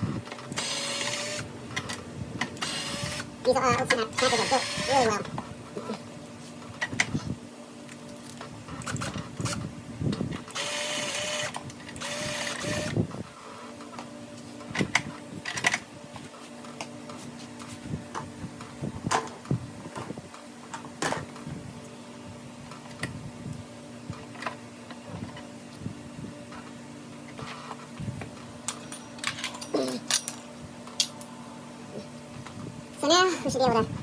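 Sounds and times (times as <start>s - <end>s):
cordless power driver running: 0.0s - 5.9s, 8.6s - 13.2s
tools and metal parts clicking: 28.7s - 31.3s.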